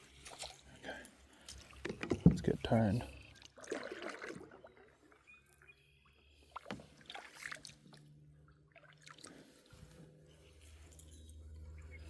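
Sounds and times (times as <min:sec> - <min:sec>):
light water sounds: 0:00.0 - 0:11.9
faint knocks on boat: 0:01.8 - 0:02.6.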